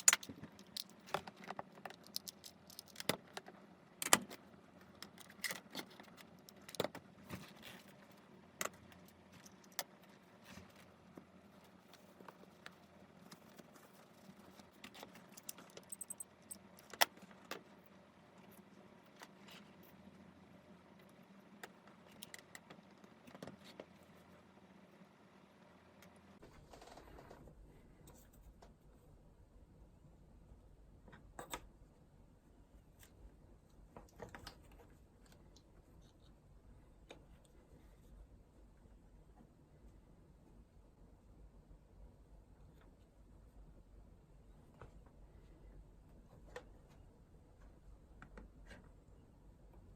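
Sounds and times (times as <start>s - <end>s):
clicks of small hard objects: 0.0s - 3.4s
small objects clicking and tapping: 0.0s - 7.0s.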